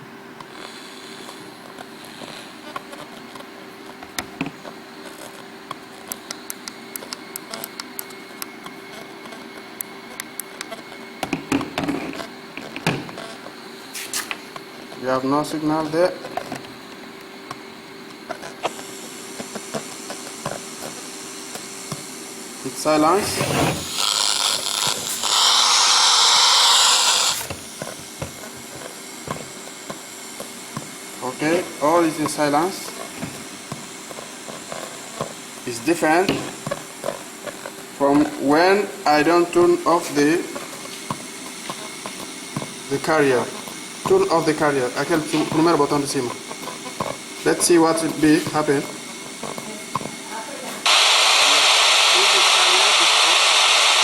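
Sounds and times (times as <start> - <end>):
low electrical hum: 0.0 - 54.0
radio static hiss: 10.8 - 16.6, 18.4 - 54.0.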